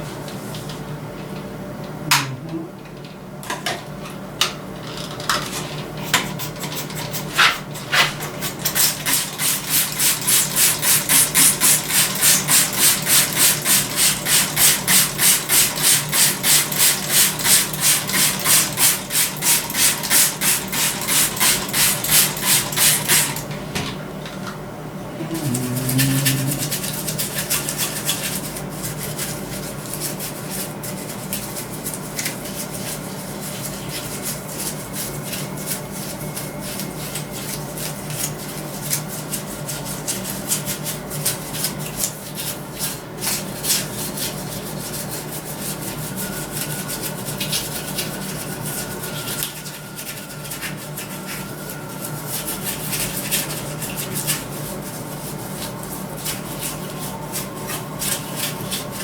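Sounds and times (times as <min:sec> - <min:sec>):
steady low hum: 0:02.0 - 0:02.9, 0:24.7 - 0:27.4
stiff brush scrubbing metal: 0:42.4 - 0:59.0.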